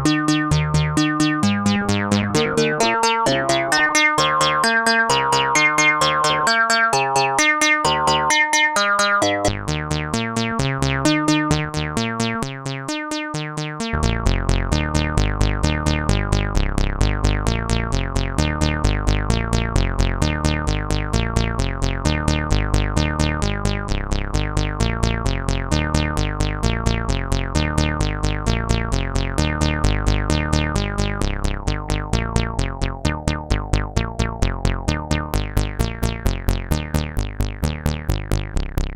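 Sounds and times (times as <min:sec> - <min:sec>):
analog synthesizer sequence: 0:00.0 - 0:10.0.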